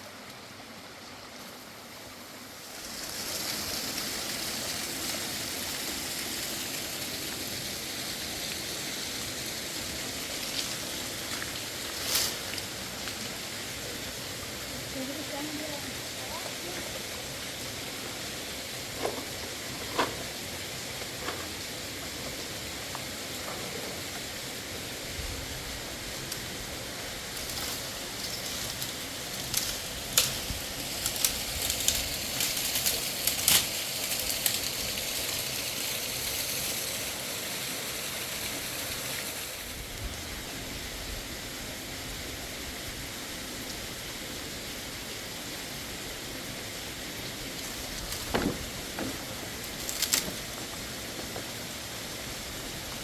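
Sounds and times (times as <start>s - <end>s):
flowing mountain water: 0.0s - 53.0s
sharp clicks and crackles: 27.4s - 34.9s, 47.6s - 50.7s.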